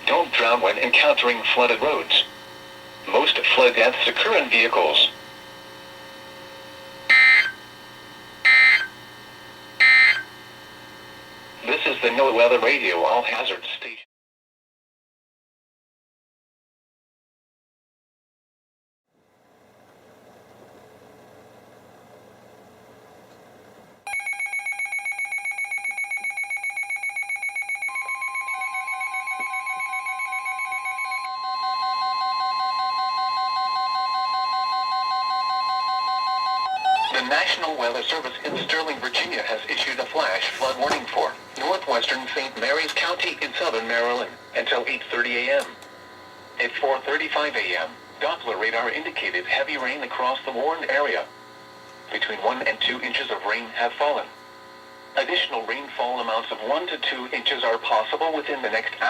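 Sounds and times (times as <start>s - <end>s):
low radio hiss: 0.0s - 7.1s, 10.4s - 14.0s, 37.1s - 54.4s, 55.1s - 59.0s
steady warning alarm tone: 0.0s - 13.6s, 24.1s - 45.4s
digital data tone bursts: 7.1s - 7.6s, 8.5s - 8.9s, 9.8s - 10.3s
rapid electronic beeping: 24.1s - 31.2s, 36.6s - 37.7s.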